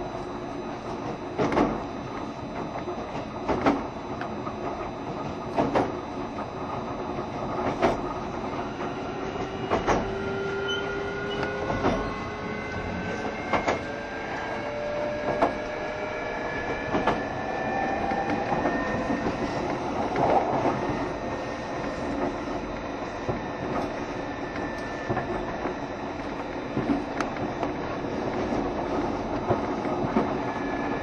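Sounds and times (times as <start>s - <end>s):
train running rumble: 0.0s - 31.0s
train wheels clacking over rail joints: 7.6s - 12.1s, 16.9s - 17.2s
traction motor whine: 8.1s - 29.4s.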